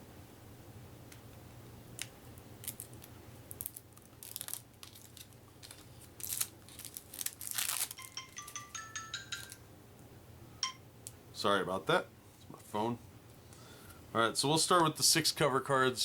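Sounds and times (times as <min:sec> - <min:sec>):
plastic wrapping crinkling and tearing: 0:02.6 - 0:08.3
phone notification tone: 0:08.0 - 0:09.6.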